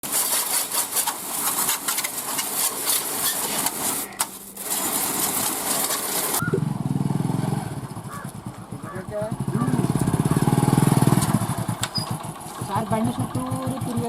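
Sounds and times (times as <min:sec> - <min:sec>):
pressure washer spraying metal: 0:00.0 - 0:06.4
motorcycle engine idling: 0:06.4 - 0:14.0.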